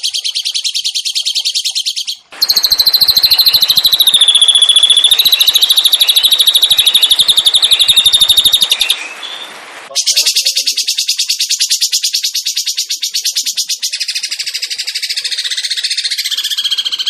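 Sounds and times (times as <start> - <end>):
soft bird chirps: 0.0 - 17.0
songbird trilling: 0.0 - 17.0.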